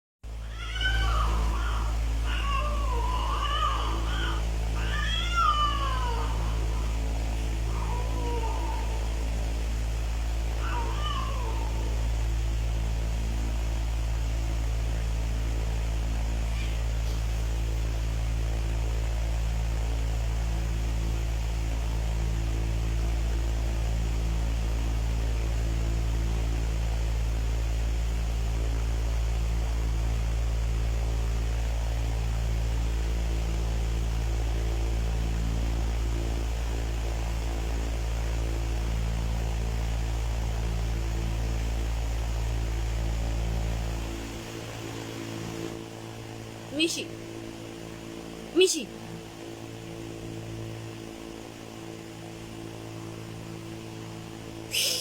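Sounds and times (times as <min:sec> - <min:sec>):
low hum: 0:00.2 - 0:55.0
even hiss: 0:54.6 - 0:55.0.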